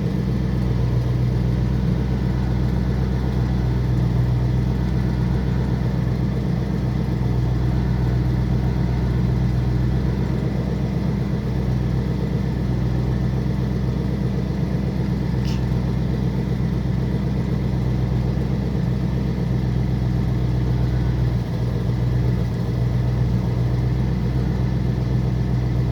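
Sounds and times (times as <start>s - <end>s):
car engine idling: 0.0s - 25.9s
short high tick: 15.4s - 15.7s.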